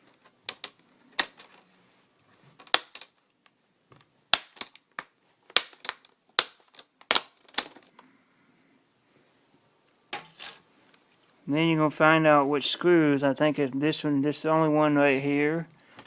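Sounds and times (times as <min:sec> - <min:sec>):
plastic clips snapping: 0:00.0 - 0:01.6, 0:02.6 - 0:08.0.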